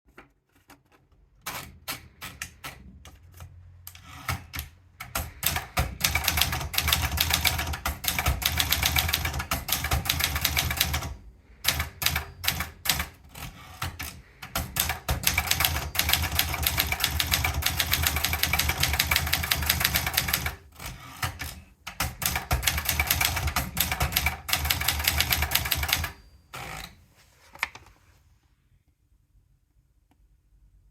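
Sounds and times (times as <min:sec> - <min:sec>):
typewriter key strikes: 0:13.9 - 0:20.6.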